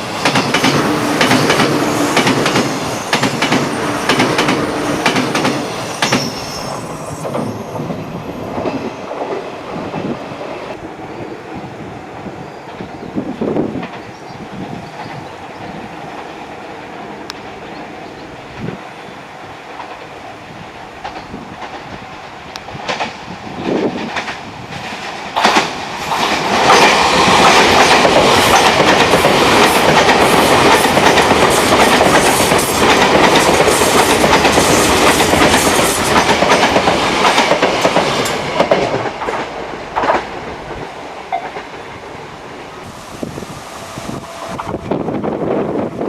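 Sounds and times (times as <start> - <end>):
train wheels clacking over rails: 0.0 - 10.8, 12.6 - 17.5, 20.9 - 41.9.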